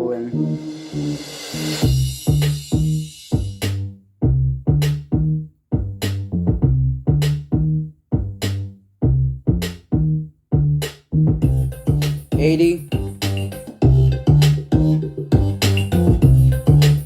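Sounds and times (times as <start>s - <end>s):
electronic beat over speaker: 0.0s - 3.8s, 11.3s - 17.0s.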